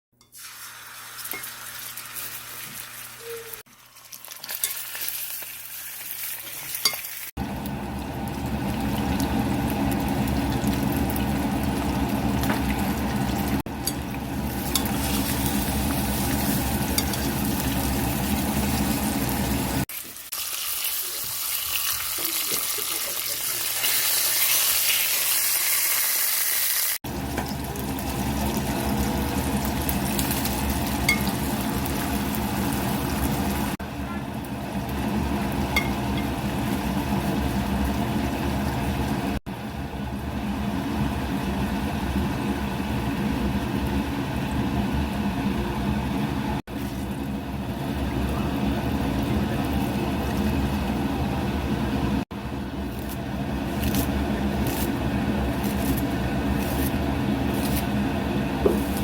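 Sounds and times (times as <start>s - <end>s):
food sizzling in a pan: 0.2s - 33.8s.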